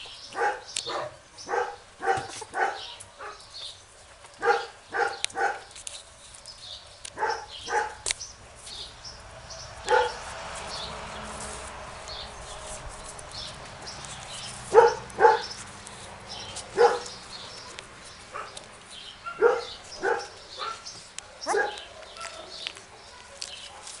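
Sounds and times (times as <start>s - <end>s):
dog barking: 0.3s - 3.5s, 4.4s - 5.7s, 7.2s - 8.0s, 9.8s - 10.2s, 14.7s - 15.6s, 16.7s - 18.6s, 19.2s - 24.0s.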